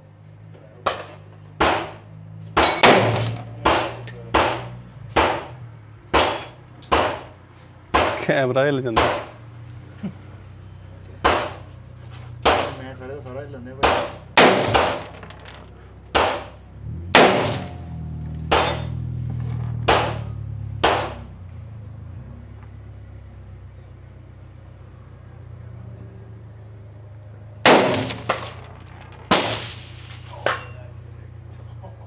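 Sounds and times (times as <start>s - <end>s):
gunshots with echo: 2.6s - 5.6s, 12.4s - 12.9s, 13.8s - 15.5s, 16.2s - 19.0s, 19.8s - 21.3s, 27.6s - 30.6s.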